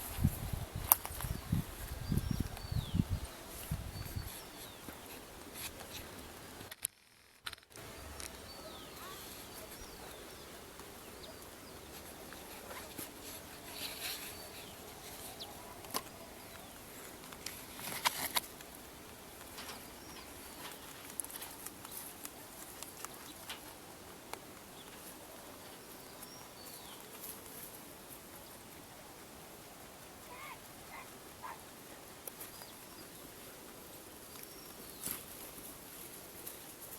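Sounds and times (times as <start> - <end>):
birds chirping: 0.0 - 6.6, 7.8 - 23.8, 30.2 - 33.3
outdoor background noise: 0.0 - 36.9
clicks or rustles: 3.5 - 10.9, 11.9 - 18.8.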